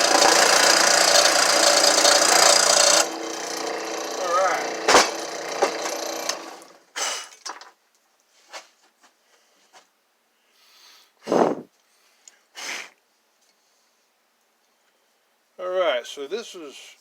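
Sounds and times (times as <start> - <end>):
wood being cut: 0.0 - 6.8
knocks and scrapes of wood: 4.9 - 6.0.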